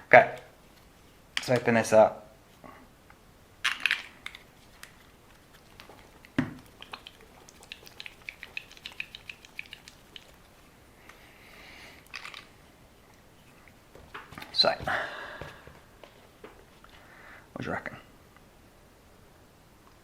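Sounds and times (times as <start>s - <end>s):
quick ticks: 6.8s - 10.4s.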